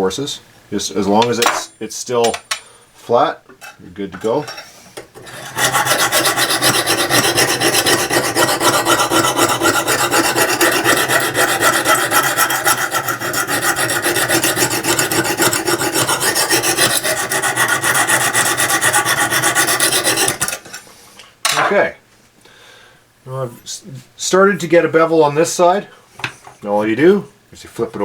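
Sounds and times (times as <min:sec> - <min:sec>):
hone rasping on steel: 0:05.2 - 0:20.8.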